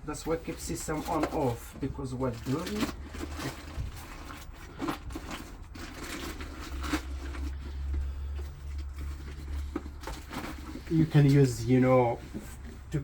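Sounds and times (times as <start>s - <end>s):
rustling and handling noises: 0.0s - 13.0s.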